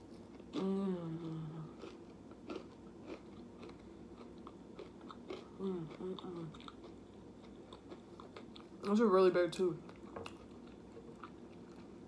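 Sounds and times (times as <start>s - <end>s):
person chewing and biting food: 0.1s - 8.8s, 9.8s - 12.0s
person humming: 0.5s - 1.8s, 5.6s - 6.5s.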